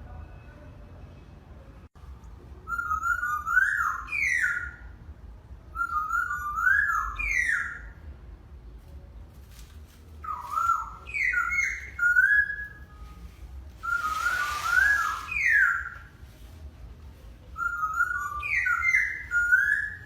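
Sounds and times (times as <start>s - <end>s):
brief hiss: 13.8s - 15.4s.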